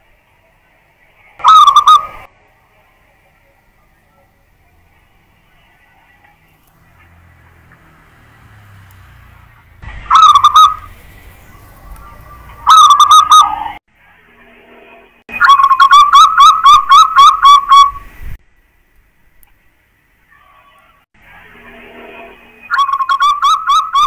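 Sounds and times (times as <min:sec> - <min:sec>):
dove cooing: 0:01.4 - 0:02.3, 0:10.1 - 0:10.9, 0:12.0 - 0:13.7.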